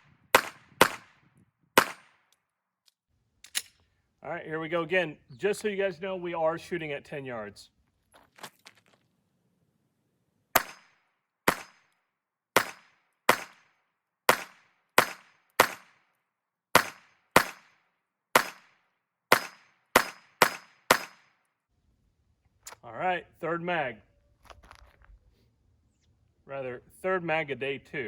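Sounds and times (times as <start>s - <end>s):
pistol shots: 0.3s - 1.2s, 1.8s - 2.2s, 10.6s - 11.8s, 12.6s - 13.7s, 14.3s - 16.0s, 16.8s - 17.8s, 18.4s - 21.3s.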